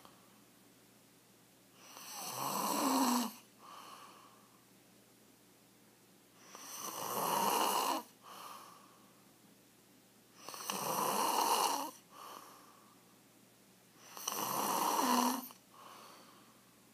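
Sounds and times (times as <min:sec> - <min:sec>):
quiet breath: 0:00.0 - 0:00.6, 0:01.7 - 0:04.8, 0:06.3 - 0:07.0, 0:08.0 - 0:09.4, 0:10.3 - 0:13.3, 0:13.9 - 0:16.9
man snoring loudly: 0:01.9 - 0:03.4, 0:06.6 - 0:08.1, 0:10.4 - 0:12.0, 0:14.0 - 0:15.6.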